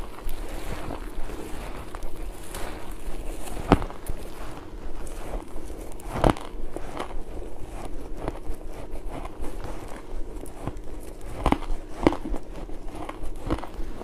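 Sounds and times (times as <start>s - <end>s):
crunching ice: 0.0s - 14.0s.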